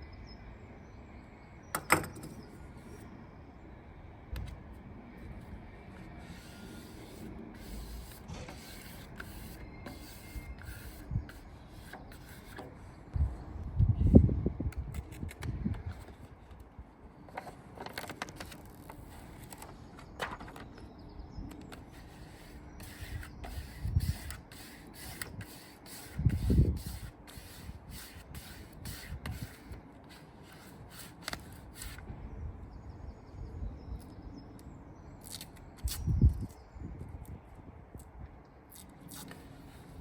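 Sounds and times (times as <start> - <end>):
squeegee scraping on vinyl: 6.0 - 12.8, 21.6 - 32.0.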